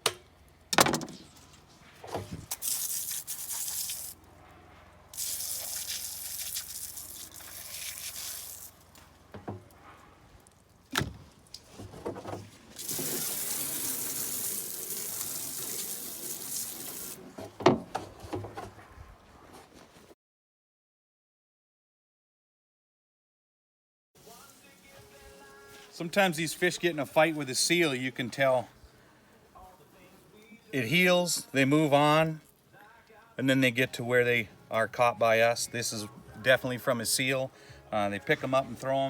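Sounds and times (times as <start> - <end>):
knocks and clunks: 0.0 - 1.2, 17.3 - 18.9
running water splashing: 2.5 - 4.2, 5.2 - 8.9, 12.7 - 17.2.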